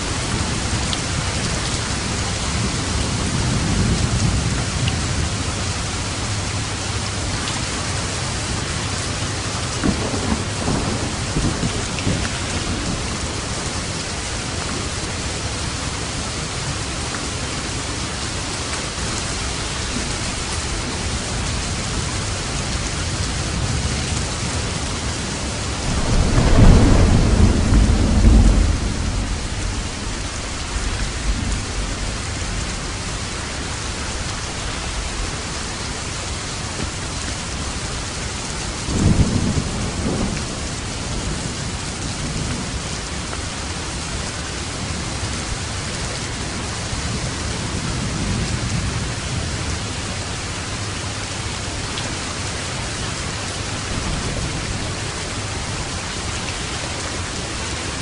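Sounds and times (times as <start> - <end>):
thunder rumbling: 0.0 - 45.8
steady rain falling: 0.0 - 58.0.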